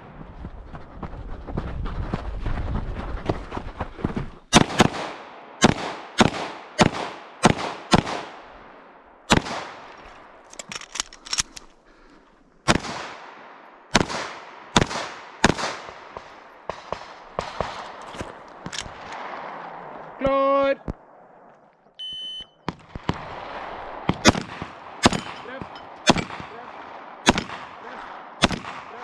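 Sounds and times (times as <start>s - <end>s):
distant gunshots: 4.5s - 8.6s, 9.3s - 9.9s, 12.6s - 20.0s, 22.6s - 29.0s
pistol shots echoing: 4.5s - 10.4s, 12.6s - 18.0s, 22.6s - 29.0s.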